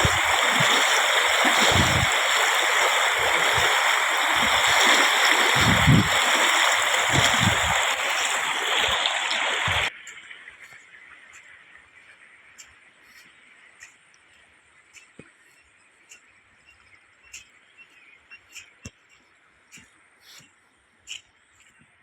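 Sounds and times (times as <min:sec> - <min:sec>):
rushing floodwater: 0:00.0 - 0:09.9
wind buffeting microphone: 0:00.0 - 0:09.9.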